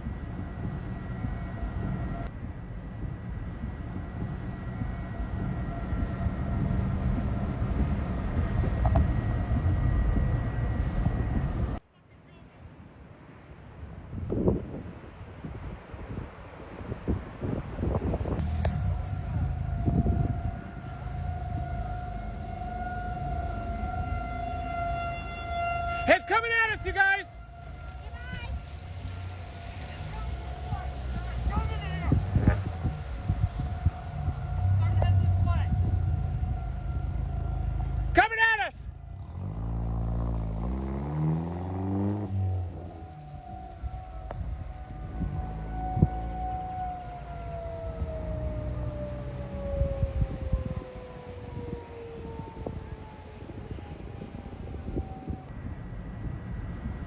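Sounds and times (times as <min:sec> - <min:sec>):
warning siren steady tone: 0:00.0 - 0:11.8, 0:17.8 - 0:57.0
wind buffeting microphone: 0:00.0 - 0:11.8, 0:12.8 - 0:38.2, 0:38.8 - 0:57.0
vehicle engine revving: 0:26.8 - 0:38.2, 0:38.8 - 0:44.3.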